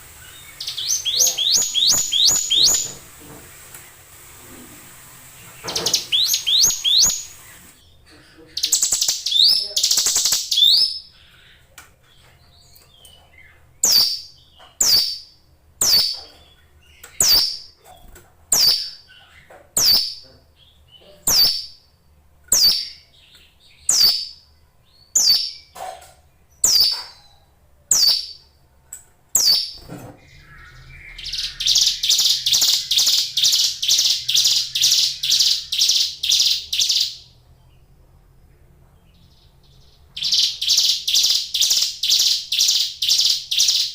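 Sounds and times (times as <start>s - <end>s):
songbird calling: 0.0s - 3.2s, 5.3s - 17.8s, 22.5s - 25.9s, 29.4s - 37.9s, 39.1s - 43.9s.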